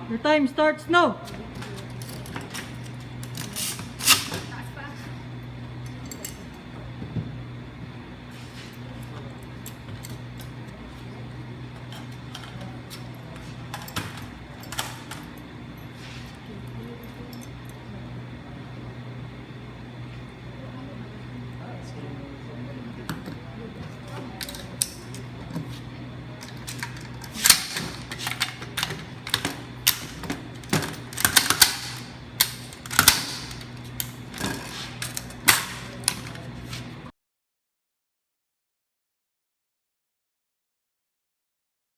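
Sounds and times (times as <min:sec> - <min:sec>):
steady low hum: 0:00.0 - 0:37.1
rifle parts clicking and clinking: 0:26.4 - 0:36.4.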